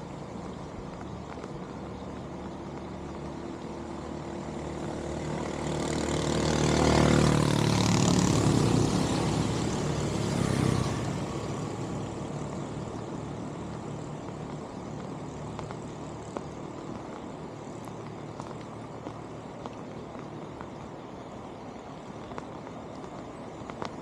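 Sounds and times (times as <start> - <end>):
vehicle passing by: 3.3 - 16.4.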